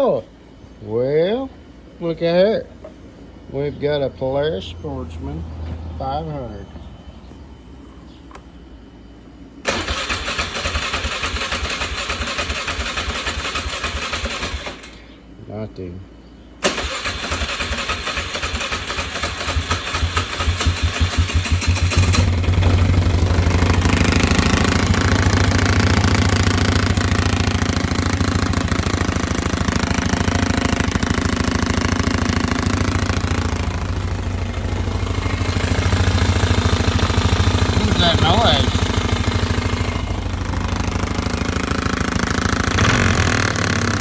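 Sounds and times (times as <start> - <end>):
atv engine idling: 16.8 - 44.0.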